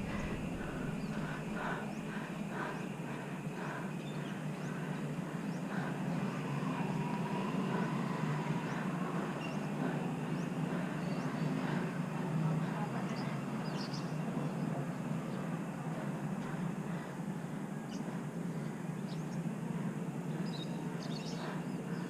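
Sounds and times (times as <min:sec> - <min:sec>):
road and traffic noise: 0:04.4 - 0:17.3.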